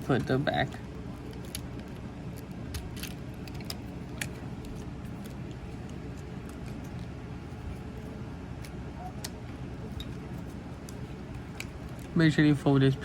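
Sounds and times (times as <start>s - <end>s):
steady low hum: 0.0s - 13.0s
plastic toy parts clicking: 1.2s - 4.9s.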